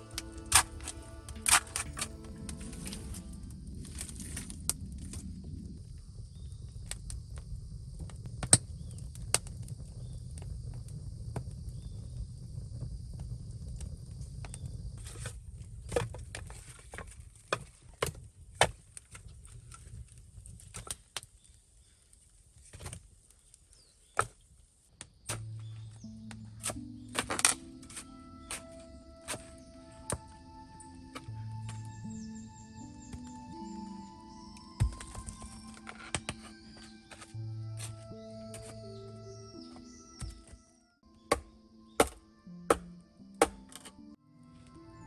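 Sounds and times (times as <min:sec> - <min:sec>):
low rumble: 0:00.0 - 0:15.9
knocks and taps in earth and stone: 0:34.8 - 0:38.8, 0:39.7 - 0:40.6, 0:41.2 - 0:44.0.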